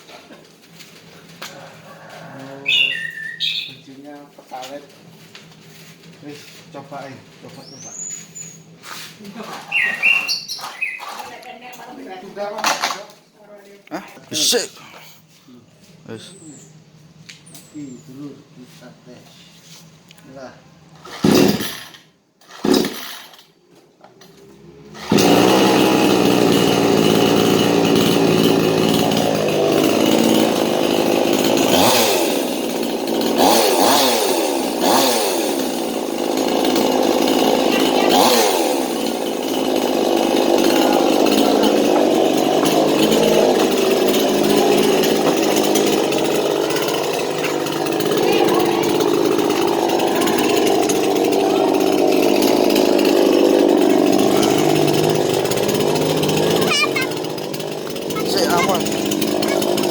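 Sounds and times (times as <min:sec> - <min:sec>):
chainsaw running and revving: 0:00.0 - 0:02.9, 0:14.2 - 0:14.7, 0:21.0 - 0:23.5, 0:24.2 - 0:59.9.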